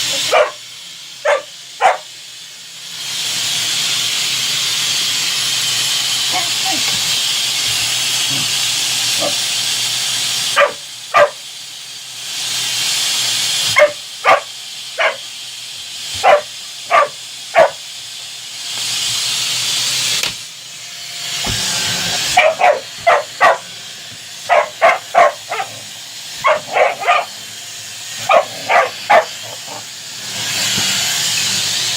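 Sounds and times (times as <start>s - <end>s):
vacuum cleaner hiss: 0.0s - 31.9s
puppy barking high-pitched yaps: 0.1s - 0.6s, 1.2s - 2.1s, 10.6s - 11.4s, 13.7s - 15.2s, 16.2s - 17.8s, 22.4s - 23.7s, 24.5s - 25.8s, 26.4s - 27.3s, 28.2s - 29.8s.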